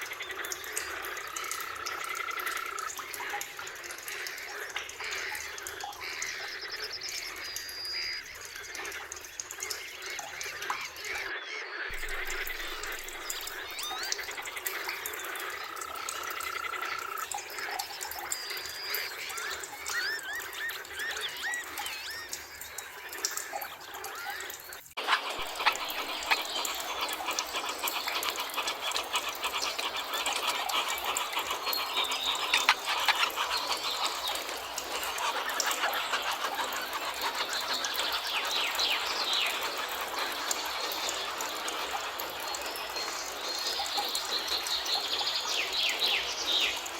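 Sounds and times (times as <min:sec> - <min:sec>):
clicking and trilling animal calls: 0:00.0 - 0:46.9
birds whistling: 0:25.1 - 0:46.9.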